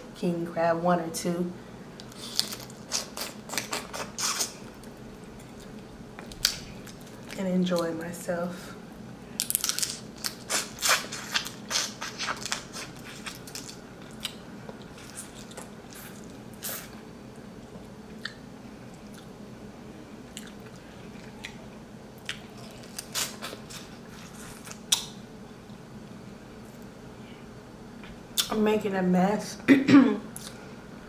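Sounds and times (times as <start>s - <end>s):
crab shells cracking: 9.4s - 15.7s.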